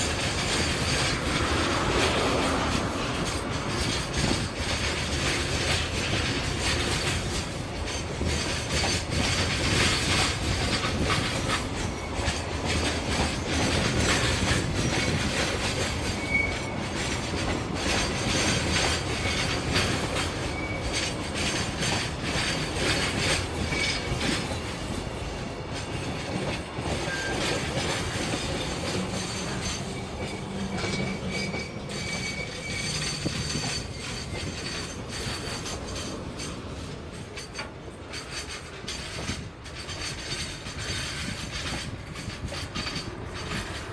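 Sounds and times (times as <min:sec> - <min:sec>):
train wheels clattering over rails: 0:00.0 - 0:43.9
high wheel squeals: 0:13.2 - 0:24.6, 0:27.0 - 0:27.7, 0:28.6 - 0:36.6.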